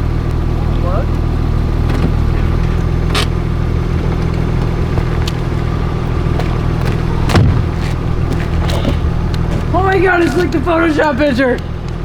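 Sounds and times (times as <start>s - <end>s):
car engine droning: 0.0s - 12.0s
road and tyre noise: 0.0s - 12.0s
sharp knocks: 6.4s - 9.7s.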